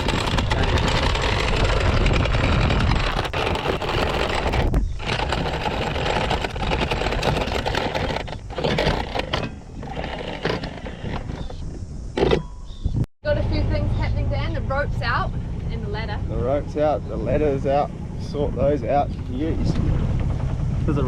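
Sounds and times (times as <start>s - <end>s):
anchor chain clattering: 0.0s - 12.7s.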